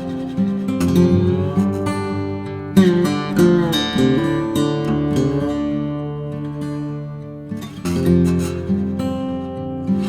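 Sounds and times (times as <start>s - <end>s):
acoustic guitar music: 0.0s - 10.0s.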